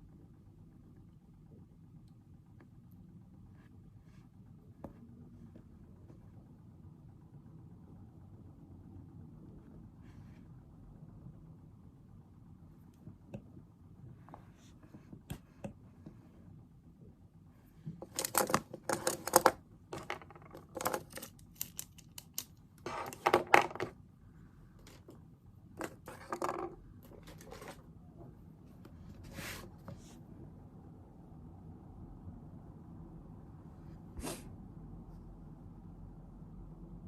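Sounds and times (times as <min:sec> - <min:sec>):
small objects clattering on desk: 0:18.0 - 0:24.0, 0:25.8 - 0:27.8.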